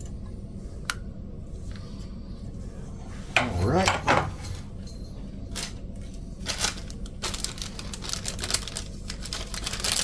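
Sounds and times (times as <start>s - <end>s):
plastic bag crinkling: 6.4s - 10.0s.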